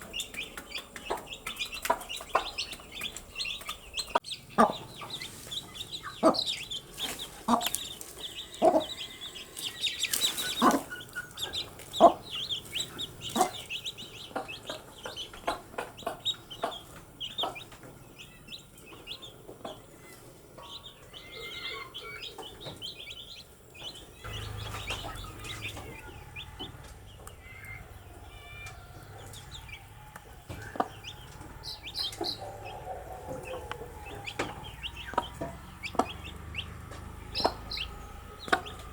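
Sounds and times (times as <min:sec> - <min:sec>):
baby chicks peeping: 0:00.0 - 0:38.9
low steady rumble: 0:24.1 - 0:38.9.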